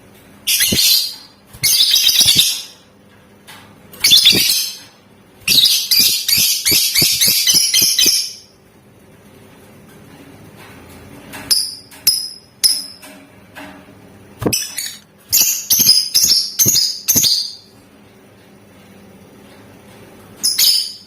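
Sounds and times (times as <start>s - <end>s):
lovebird chirping: 0.5s - 2.8s, 4.0s - 4.8s, 5.5s - 8.5s, 14.5s - 17.7s.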